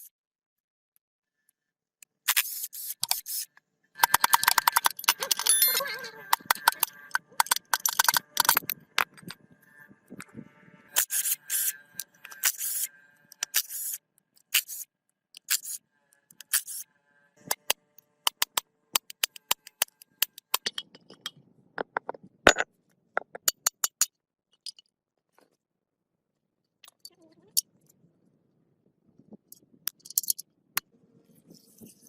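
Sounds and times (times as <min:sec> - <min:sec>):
metal clicks and knocks: 0:18.3 - 0:24.9.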